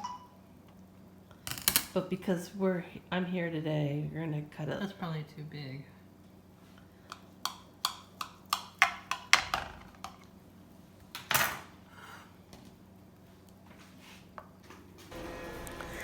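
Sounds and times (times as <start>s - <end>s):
utensil clacking against baking dish: 7.1s - 10.2s.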